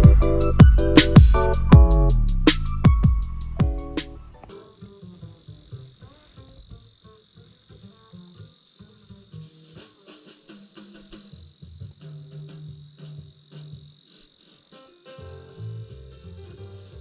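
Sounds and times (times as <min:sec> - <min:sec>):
soft background music: 0:00.0 - 0:04.8
crickets chirping: 0:00.0 - 0:16.1.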